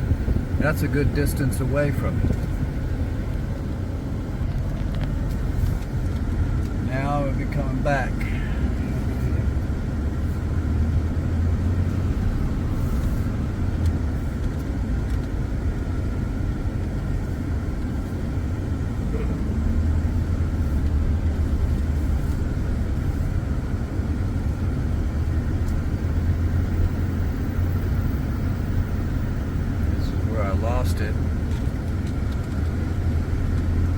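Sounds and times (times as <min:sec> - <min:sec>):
vehicle engine and road rumble: 0:00.0 - 0:33.9.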